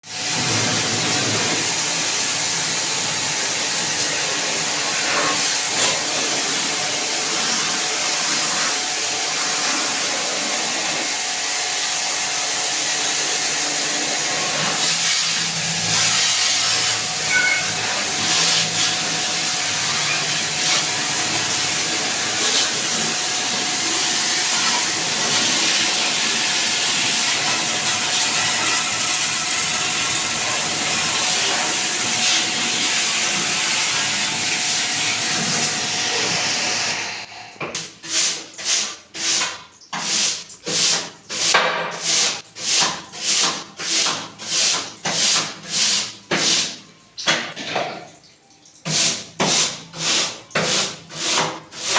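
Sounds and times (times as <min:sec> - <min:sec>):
pressure jet hissing: 0:30.5 - 0:37.3.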